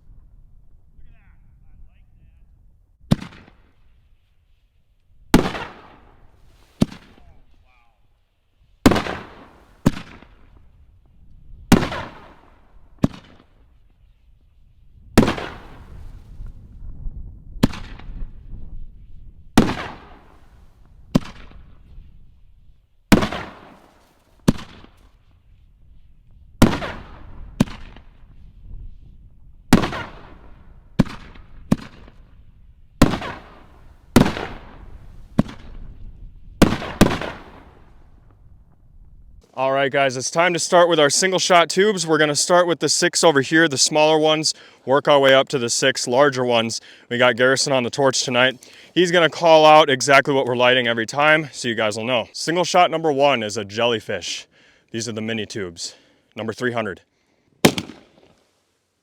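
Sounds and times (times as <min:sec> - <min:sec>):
firework shells booming: 0:03.1 - 0:03.8, 0:05.3 - 0:07.3, 0:08.8 - 0:10.7, 0:11.7 - 0:13.7, 0:15.2 - 0:16.2, 0:17.6 - 0:18.4, 0:19.5 - 0:22.0, 0:23.1 - 0:25.2, 0:26.6 - 0:28.3, 0:29.7 - 0:32.4, 0:33.0 - 0:36.0, 0:36.6 - 0:38.2, 0:57.6 - 0:58.4.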